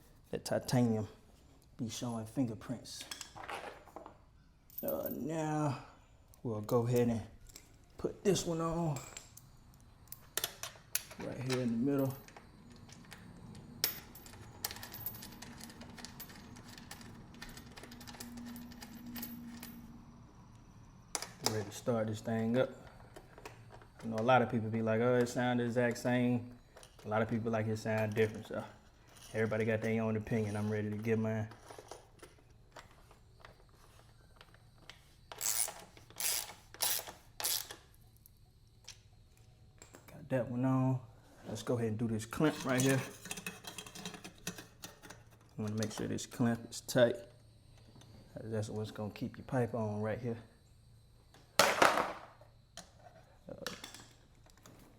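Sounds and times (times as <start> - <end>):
ratchet wrench clicking: 35.4 - 37.8.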